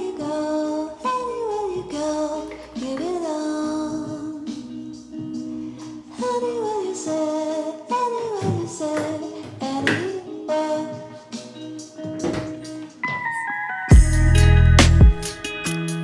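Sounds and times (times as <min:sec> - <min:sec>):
woman singing long sliding notes: 0:00.0 - 0:11.8.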